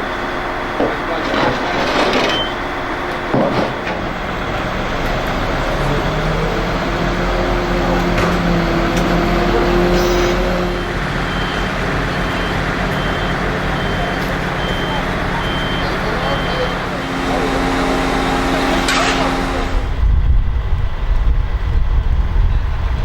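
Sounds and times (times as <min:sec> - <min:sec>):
heavy vehicle engine running: 0:00.0 - 0:23.0
street noise: 0:00.0 - 0:23.0
faint repeating beep: 0:12.3 - 0:16.8.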